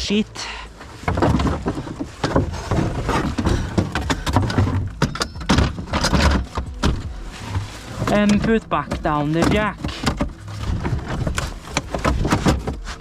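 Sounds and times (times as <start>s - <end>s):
car jack clunking and rattling: 0.8s - 13.0s.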